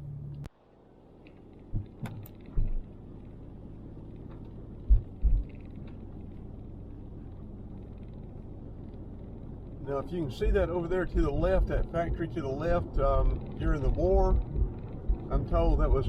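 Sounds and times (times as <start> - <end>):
car road and engine noise: 0.0 - 16.0
steady low hum: 0.0 - 16.0
low thumps: 1.7 - 2.9, 4.3 - 6.2, 10.5 - 16.0.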